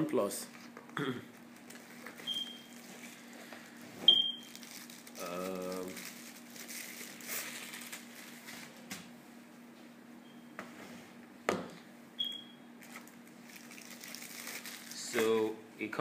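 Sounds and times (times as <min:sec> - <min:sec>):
rustling of box and paper: 0:01.6 - 0:08.8, 0:12.8 - 0:15.1.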